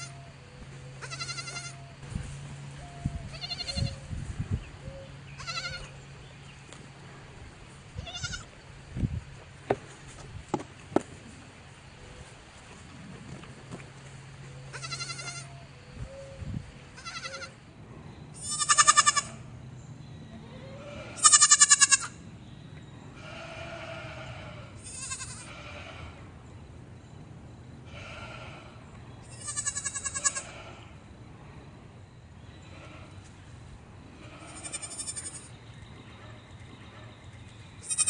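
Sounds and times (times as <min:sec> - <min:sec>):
goats bleating: 0:01.0 - 0:01.8, 0:05.4 - 0:05.9, 0:14.7 - 0:15.5, 0:18.4 - 0:19.4, 0:20.8 - 0:22.2, 0:23.2 - 0:26.1, 0:29.3 - 0:30.8, 0:34.2 - 0:35.5.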